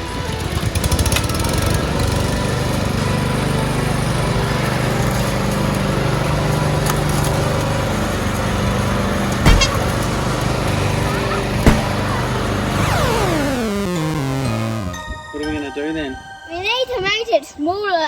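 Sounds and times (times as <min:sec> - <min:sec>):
lawn mower engine running: 0:00.0 - 0:14.9.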